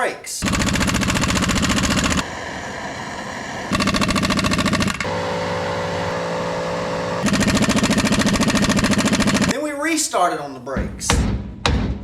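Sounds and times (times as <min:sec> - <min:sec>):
motor pulsing rapidly: 0:00.4 - 0:09.5.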